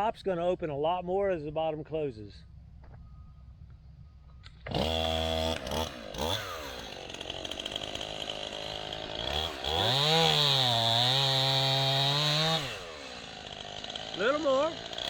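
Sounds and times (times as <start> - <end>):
chainsaw engine revving: 4.5 - 15.0.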